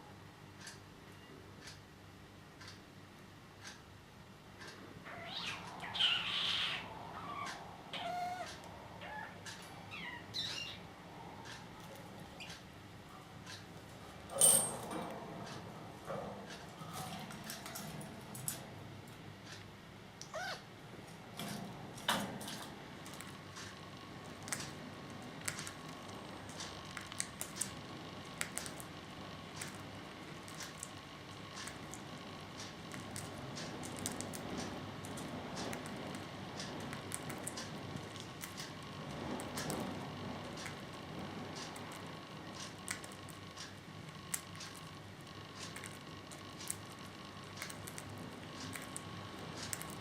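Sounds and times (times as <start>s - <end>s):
bird beak cracking seeds: 25.4s - 38.7s, 41.6s - 44.9s, 45.5s - 50.0s.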